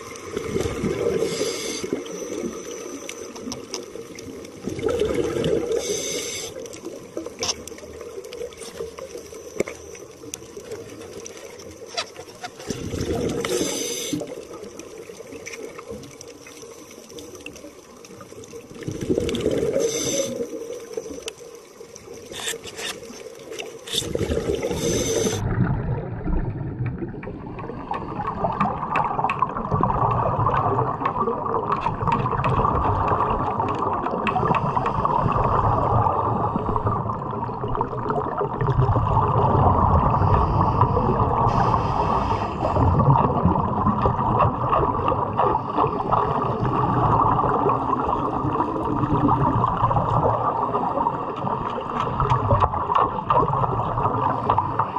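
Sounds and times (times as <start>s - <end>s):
underwater bubbling and gurgling: 0.0s - 54.9s
steady wash of water: 4.0s - 6.9s.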